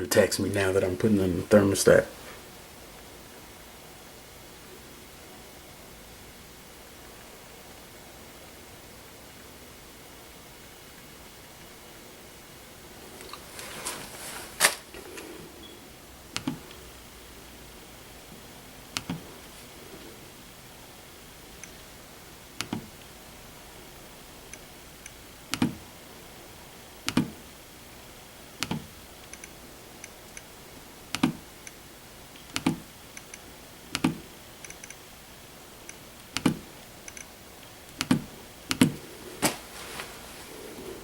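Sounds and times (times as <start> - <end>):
thermostat clicks: 16.3 - 16.8, 18.9 - 19.2, 22.6 - 22.9, 27.1 - 27.3, 28.6 - 30.5, 32.4 - 35.0, 35.9 - 37.3, 37.9 - 39.6
faint small ticks: 28.6 - 30.5.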